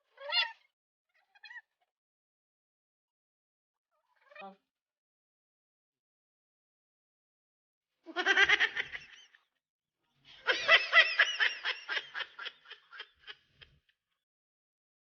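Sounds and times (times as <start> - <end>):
high-pitched laughter: 8.1 - 9.3.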